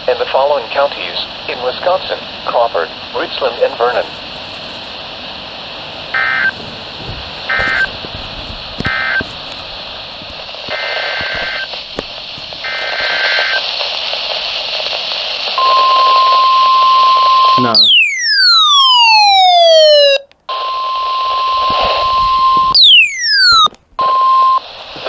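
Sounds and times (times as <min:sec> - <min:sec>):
steady warning tone: 0:00.0 - 0:11.8
radio hiss: 0:00.0 - 0:18.0, 0:18.6 - 0:25.0.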